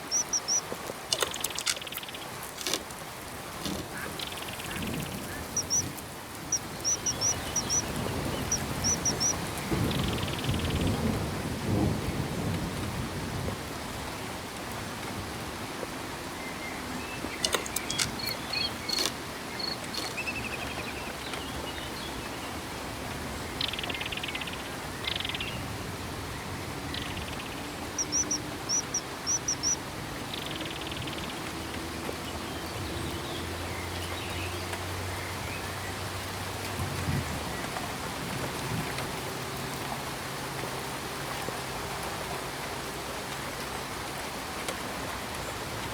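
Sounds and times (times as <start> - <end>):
small birds chirping: 0.0 - 10.9, 16.4 - 22.6, 26.3 - 36.0
steady rain falling: 0.0 - 45.9
low thunder rumble: 6.6 - 14.1.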